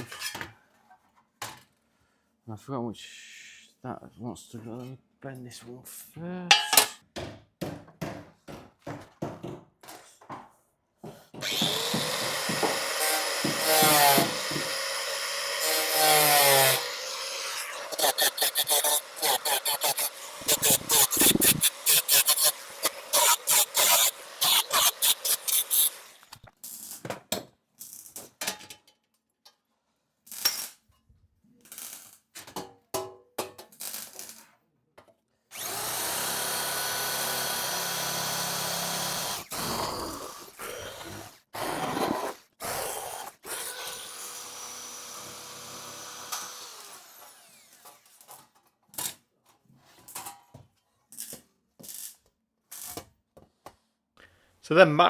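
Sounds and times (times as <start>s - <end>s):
power tool running: 11.4s - 26.4s, 35.6s - 47.8s.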